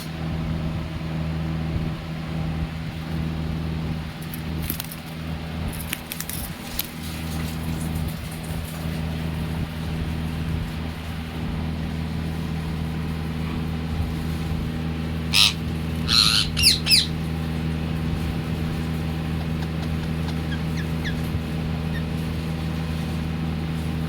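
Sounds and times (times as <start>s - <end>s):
steady low hum: 0.0s - 24.0s
parrot squawking: 15.3s - 17.2s, 18.5s - 22.4s.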